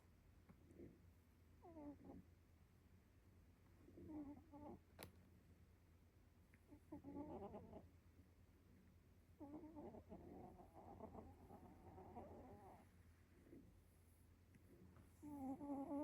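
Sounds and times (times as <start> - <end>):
cat snoring faintly: 1.6 - 2.2, 9.4 - 13.7, 15.1 - 16.0.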